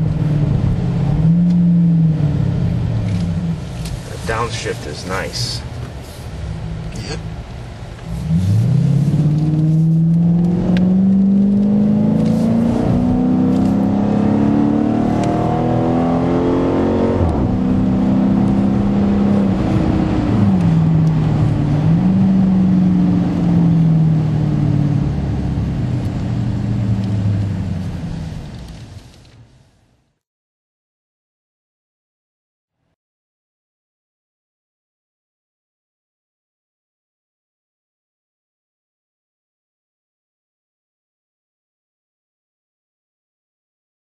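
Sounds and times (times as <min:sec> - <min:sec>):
car engine accelerating hard: 0:00.0 - 0:28.8.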